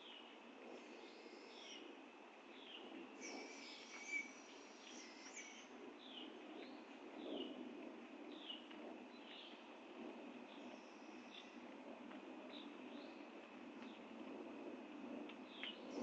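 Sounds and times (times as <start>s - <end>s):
thin bird calls: 3.2s - 6.8s.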